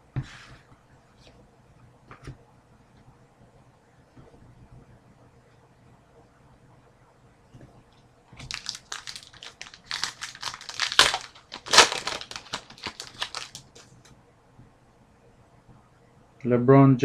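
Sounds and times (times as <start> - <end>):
wrapper crinkling by hand: 8.4 - 13.9.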